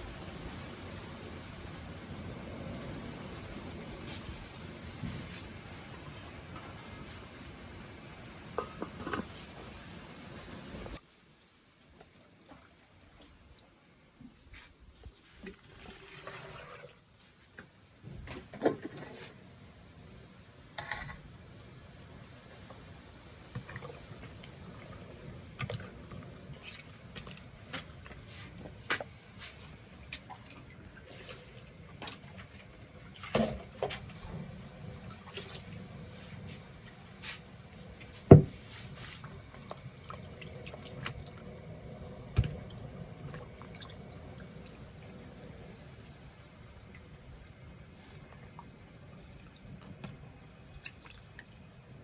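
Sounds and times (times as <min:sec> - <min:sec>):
water splashing and dripping: 0:39.0 - 0:45.2, 0:48.3 - 0:51.7.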